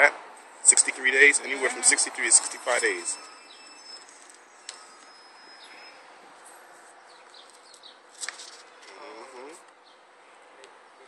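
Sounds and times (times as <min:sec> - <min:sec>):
short high chirps: 0:01.6 - 0:06.1.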